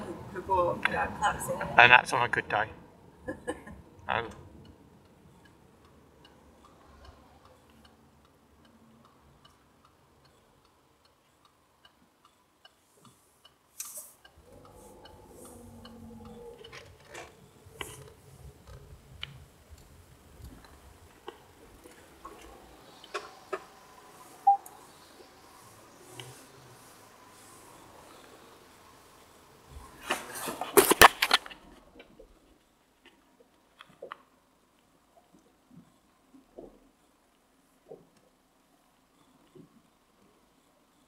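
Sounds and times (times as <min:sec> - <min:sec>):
interior road noise: 0:00.0 - 0:41.0
turn signal ticking: 0:03.8 - 0:30.0.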